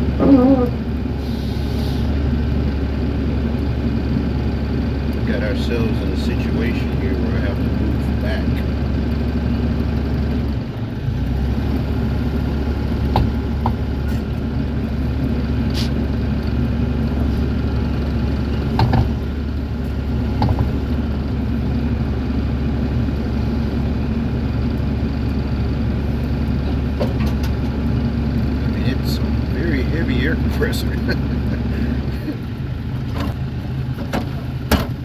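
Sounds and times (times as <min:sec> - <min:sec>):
excavator diesel engine running: 0:00.0 - 0:35.0
knocks and clanks: 0:13.1 - 0:14.3, 0:18.6 - 0:19.4, 0:20.3 - 0:21.0, 0:26.6 - 0:27.8, 0:34.0 - 0:35.0.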